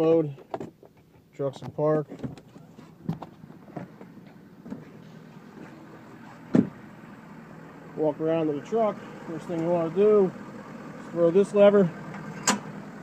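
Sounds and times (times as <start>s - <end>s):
truck engine idling: 2.4s - 13.0s
truck door slamming: 6.4s - 6.8s, 12.2s - 12.7s.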